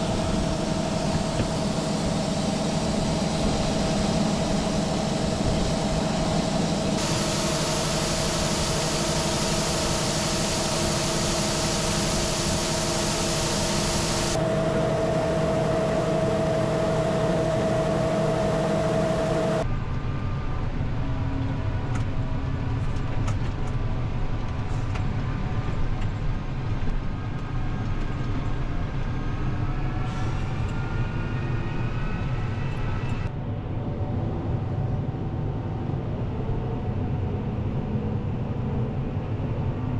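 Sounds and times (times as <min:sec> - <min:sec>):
heavy diesel engines running: 0:00.0 - 0:19.7.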